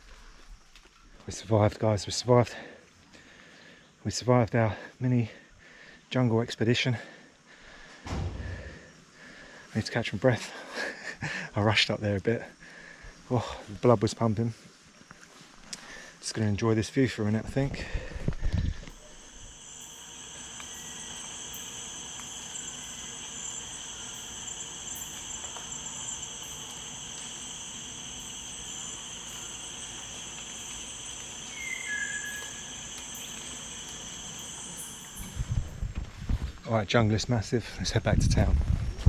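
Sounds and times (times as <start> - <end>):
shrill insect chorus: 18.9 - 35.9.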